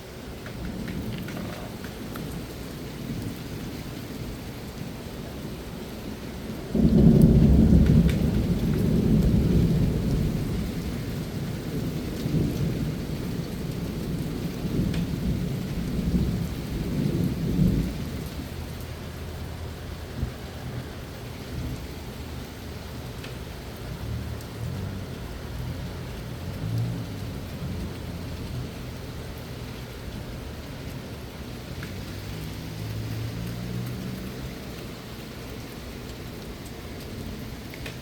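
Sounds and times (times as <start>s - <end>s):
steady rain falling: 0.0s - 38.0s
thunder rumbling: 6.6s - 35.0s.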